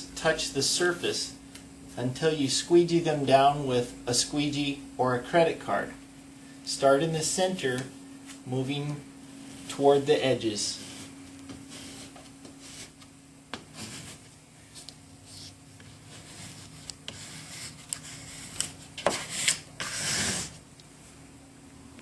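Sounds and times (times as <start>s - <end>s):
squeegee rubbing vinyl: 10.7s - 20.6s.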